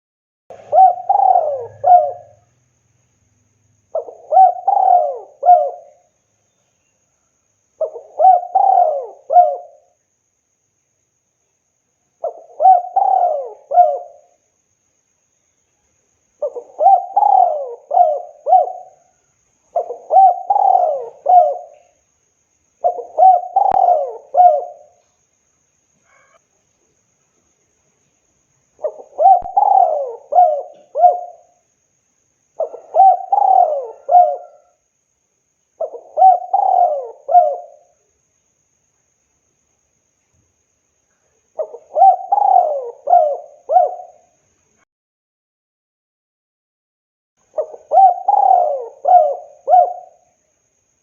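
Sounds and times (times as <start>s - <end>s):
dove cooing: 0.5s - 2.5s, 3.9s - 6.1s, 7.8s - 10.0s, 12.2s - 14.3s, 16.4s - 22.0s, 22.8s - 25.0s, 28.8s - 31.6s, 32.6s - 34.8s, 35.8s - 38.0s, 41.6s - 44.3s, 47.6s - 50.3s.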